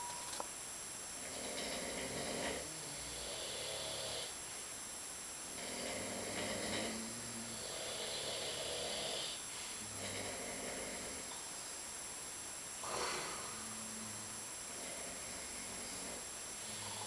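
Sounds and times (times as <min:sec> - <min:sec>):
men snoring: 0:01.2 - 0:04.3, 0:05.5 - 0:11.3, 0:12.8 - 0:17.0.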